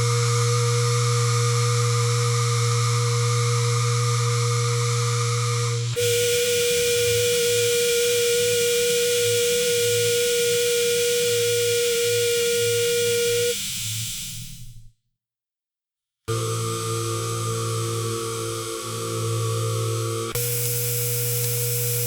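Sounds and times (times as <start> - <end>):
conveyor motor humming: 6.0 - 14.7
high whine: 6.0 - 14.8.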